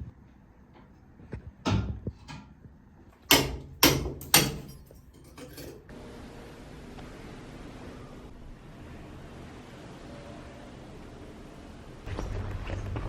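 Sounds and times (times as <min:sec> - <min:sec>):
loud knocks: 0:03.3 - 0:05.2.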